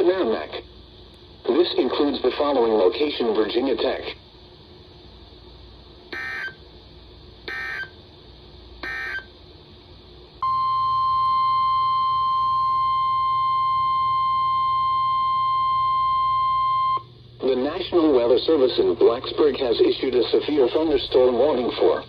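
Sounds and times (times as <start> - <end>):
steady single-pitch alert tone: 6.1 - 6.6, 7.5 - 7.9, 8.8 - 9.3.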